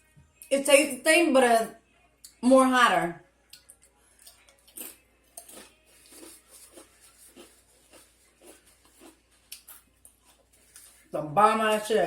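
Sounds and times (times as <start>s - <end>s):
person chewing crunchy chip: 4.2s - 11.1s.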